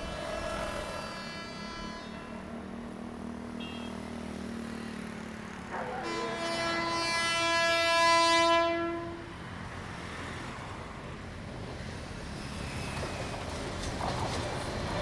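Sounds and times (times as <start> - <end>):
train rumbling on track: 0.0 - 15.0
train horn long steady note: 0.9 - 2.8, 5.7 - 9.4.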